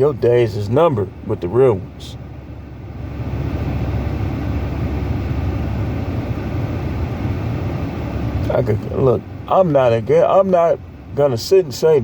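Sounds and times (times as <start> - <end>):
low vehicle rumble: 0.0 - 12.0.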